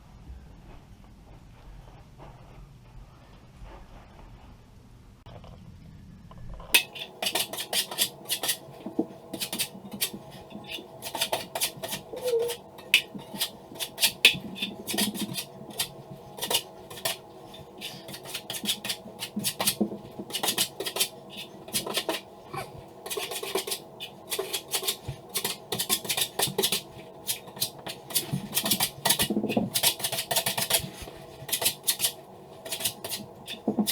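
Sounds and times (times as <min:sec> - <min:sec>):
metal knife scraping joint compound: 0:06.8 - 0:22.2.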